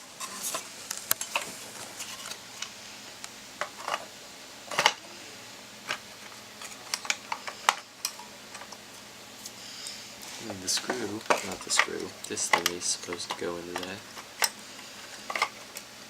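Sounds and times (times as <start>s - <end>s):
computer parts clicking and tapping: 10.8s - 15.8s.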